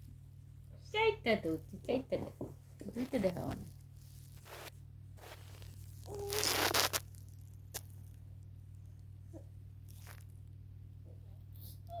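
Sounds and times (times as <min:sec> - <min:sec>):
loud tearing rasp: 0:06.1 - 0:07.0.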